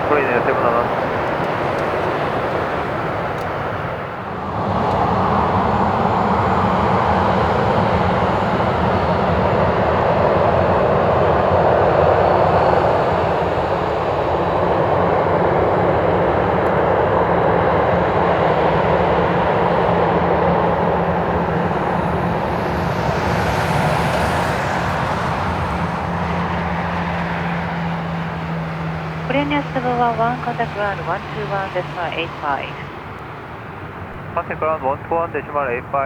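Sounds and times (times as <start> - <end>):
jet engine roar: 0.0 - 36.0
low steady hum: 29.2 - 32.9.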